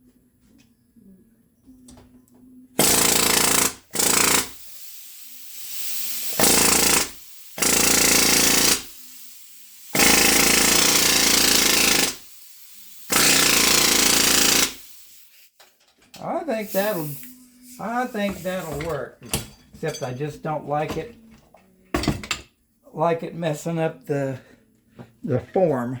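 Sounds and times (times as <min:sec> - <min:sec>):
pneumatic rivet gun hammering: 0:02.8 - 0:15.7, 0:16.7 - 0:19.5.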